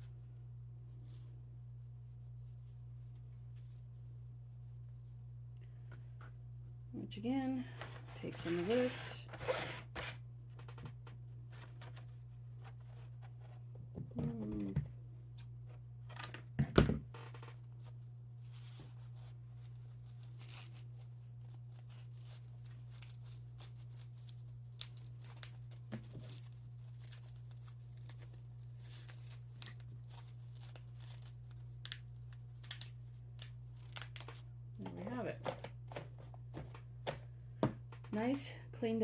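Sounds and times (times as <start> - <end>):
hook-and-loop strap ripping: 20.0 - 34.4.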